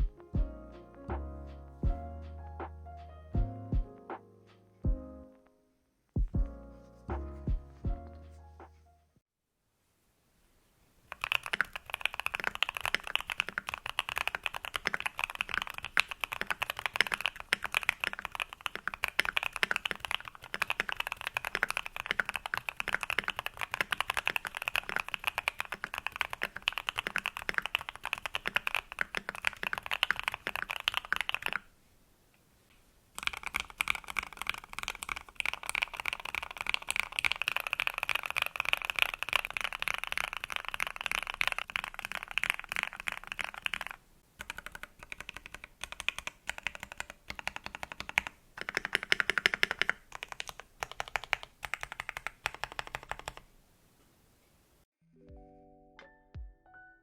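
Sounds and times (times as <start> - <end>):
fast typing on mechanical keyboard: 11.1 - 31.7, 33.2 - 53.5.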